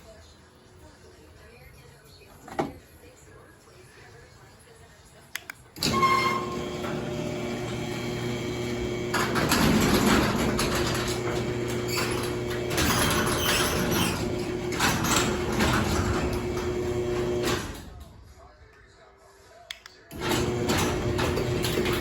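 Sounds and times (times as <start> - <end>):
garage door opener motor humming: 5.8 - 18.1, 20.1 - 22.0
garage door rattling: 5.8 - 18.2, 20.1 - 22.0.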